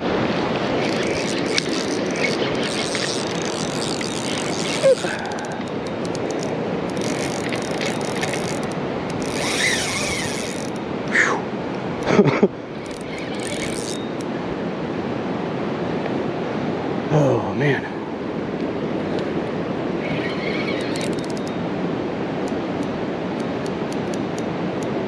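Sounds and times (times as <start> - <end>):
river rushing: 0.0 - 25.0
fishing reel ticking: 0.7 - 10.9, 12.7 - 14.3, 20.0 - 21.6.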